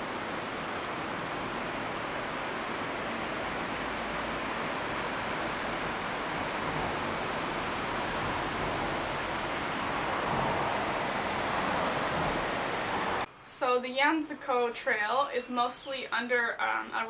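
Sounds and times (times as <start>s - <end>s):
steady rushing noise: 0.0s - 13.3s.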